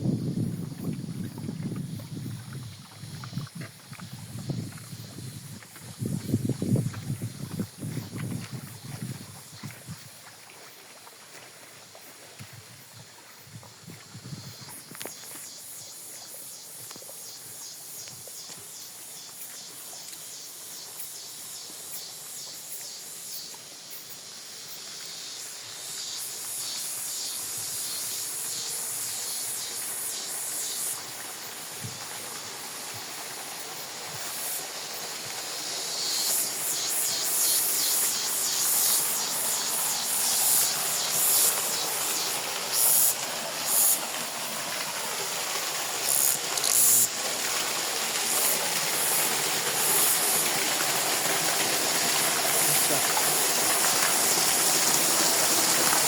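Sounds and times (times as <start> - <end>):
rushing hiss: 25.0 - 56.0.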